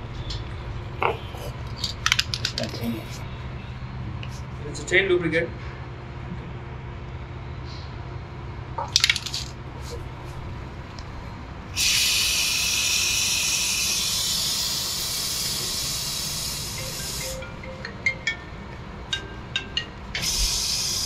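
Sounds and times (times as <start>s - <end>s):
aerosol spray hissing: 11.8s - 17.4s, 20.2s - 21.0s.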